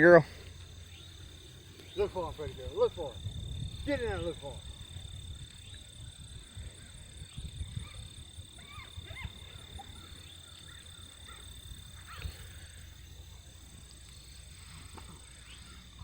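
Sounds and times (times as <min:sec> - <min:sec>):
dogs yipping: 0:07.8 - 0:12.5.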